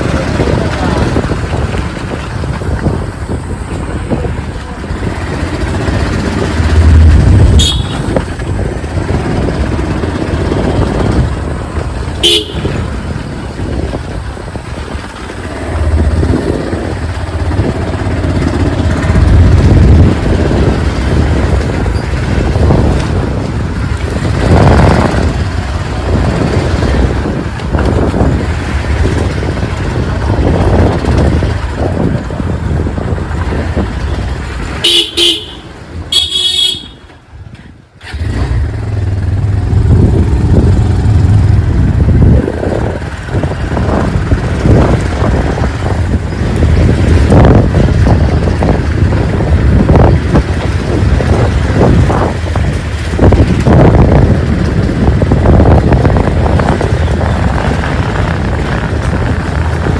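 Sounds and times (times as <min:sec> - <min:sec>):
motorcycle riding in traffic: 0:00.0 - 0:59.9
wind rumble on microphone: 0:00.0 - 0:59.9
horn toots: 0:06.8 - 0:08.4, 0:12.2 - 0:13.0, 0:34.7 - 0:37.2.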